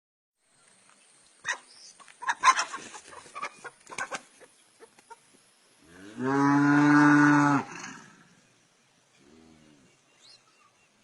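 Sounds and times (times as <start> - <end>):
chickens clucking: 1.5 - 5.4.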